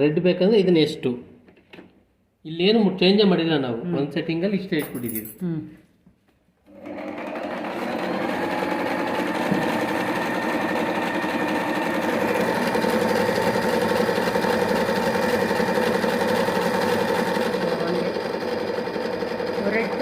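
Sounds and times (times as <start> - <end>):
sewing machine clattering: 6.7 - 20.0.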